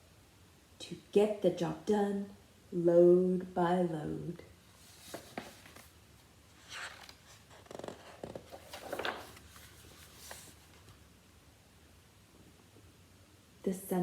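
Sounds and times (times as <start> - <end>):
paper page rustling: 4.8 - 11.0.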